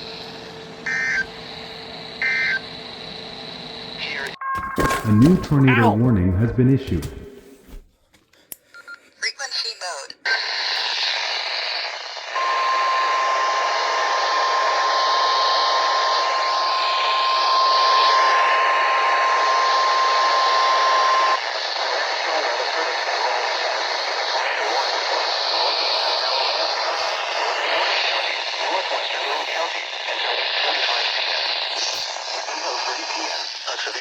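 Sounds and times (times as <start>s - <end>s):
radio static hiss: 0.0s - 7.8s, 9.3s - 34.0s
steady alarm tone: 4.3s - 7.4s.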